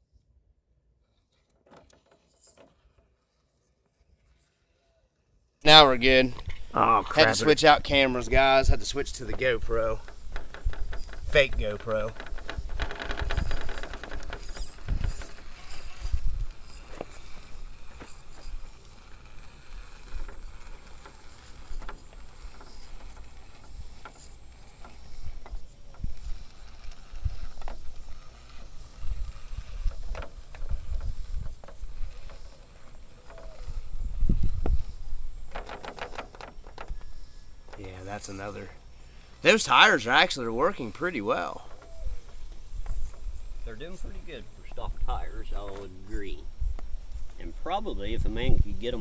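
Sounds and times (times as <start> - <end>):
rc car scraping over rocks: 1.1 - 4.9, 5.7 - 49.0.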